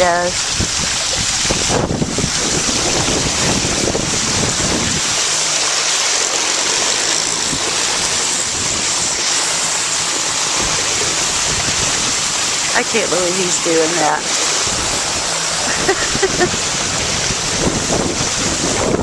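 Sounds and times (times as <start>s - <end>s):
water rushing under bicycle: 0.0s - 19.0s
wind buffeting microphone: 0.0s - 19.0s.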